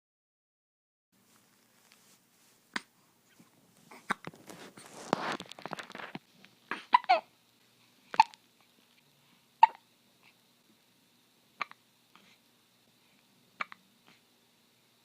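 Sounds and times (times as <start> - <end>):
breathy baby sounds: 3.9 - 5.0, 6.7 - 7.3, 9.4 - 10.4
baby hiccuping: 6.7 - 7.3, 8.2 - 8.4, 9.6 - 9.9, 13.6 - 13.8.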